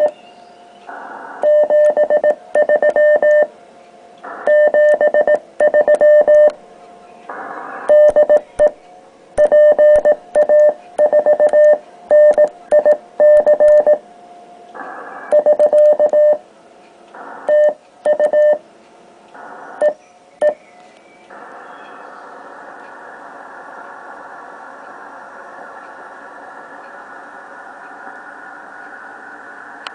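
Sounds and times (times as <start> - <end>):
radio hiss: 0.9 - 3.5, 4.2 - 11.4, 14.7 - 16.4, 17.1 - 18.6, 19.3 - 29.9
morse code sidetone beeps: 1.4 - 3.5, 4.5 - 6.6, 7.9 - 8.8, 9.4 - 14.0, 15.3 - 16.4, 17.5 - 18.6, 19.8 - 20.6.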